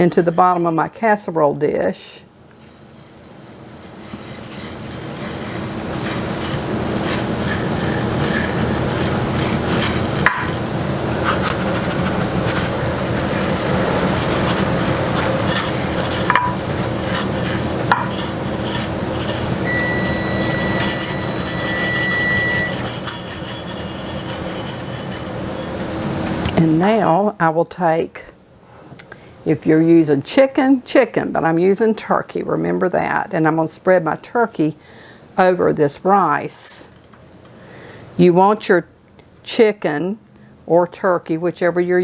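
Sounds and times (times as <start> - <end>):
rice scraping and rattling in dish: 0.0 - 0.8, 2.5 - 26.5.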